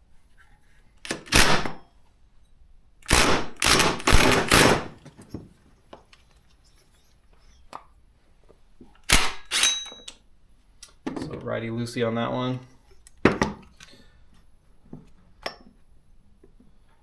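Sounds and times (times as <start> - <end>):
impact wrench rattling bursts: 3.1 - 5.4.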